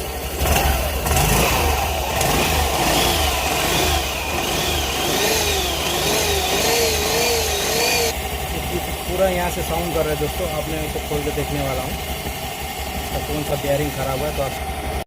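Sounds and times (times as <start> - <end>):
gearbox whine wavering in pitch: 0.0 - 8.7
scooter engine idling: 0.0 - 15.0.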